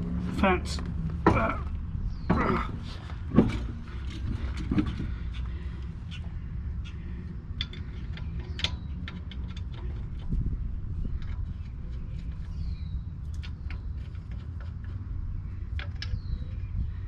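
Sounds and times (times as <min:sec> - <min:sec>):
steady low rumble: 0:00.0 - 0:17.0
metal tools clicking and knocking: 0:07.5 - 0:10.3.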